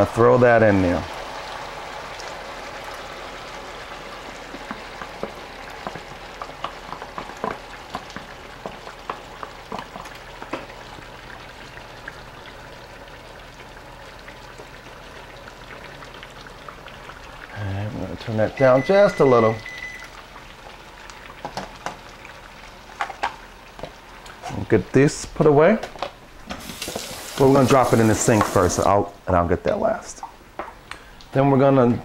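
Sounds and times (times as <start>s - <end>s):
food sizzling in a pan: 0.0s - 25.0s, 26.4s - 29.0s
sharp taps and pops: 4.5s - 10.7s.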